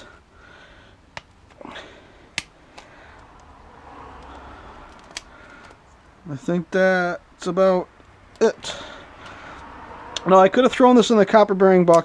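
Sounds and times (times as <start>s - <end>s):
sharp clicks: 4.2s - 5.8s.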